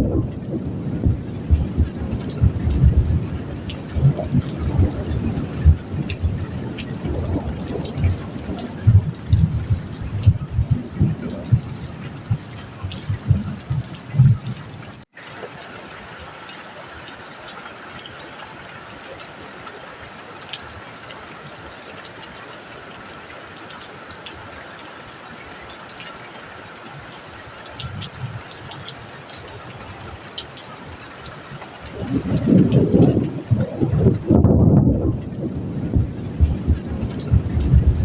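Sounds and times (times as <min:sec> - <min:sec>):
thunder rumble: 0:00.0 - 0:15.0, 0:31.8 - 0:38.0
light drip ticks: 0:00.0 - 0:15.6, 0:16.4 - 0:38.0
steady rain hiss: 0:00.0 - 0:38.0.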